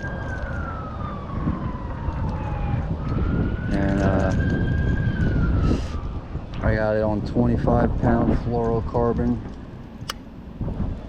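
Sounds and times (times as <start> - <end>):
siren wailing: 0.0 - 6.9.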